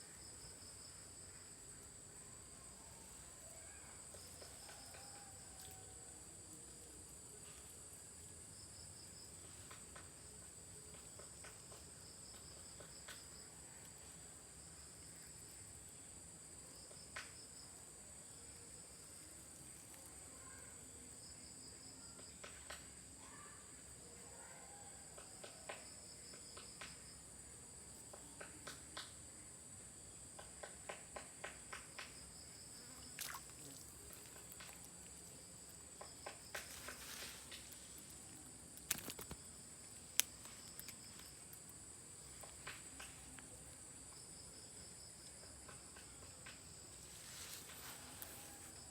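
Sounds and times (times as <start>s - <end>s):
rapid cricket chirping: 0.0s - 48.9s
insects buzzing high-pitched: 31.7s - 45.0s
faint clicks: 33.2s - 43.6s.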